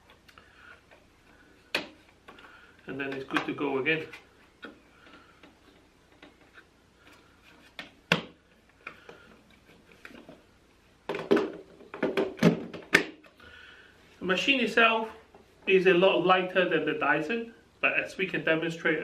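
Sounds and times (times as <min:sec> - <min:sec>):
knocks and clatters: 0:11.1 - 0:13.2.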